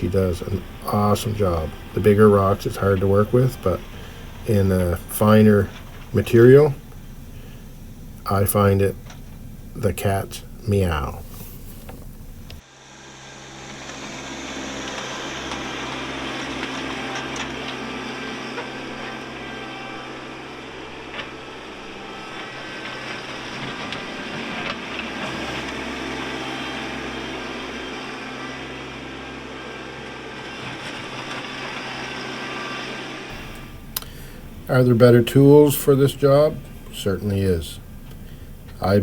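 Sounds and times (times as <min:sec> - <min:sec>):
constant rushing noise: 0:00.0 - 0:07.0
tractor diesel engine running: 0:00.0 - 0:39.0.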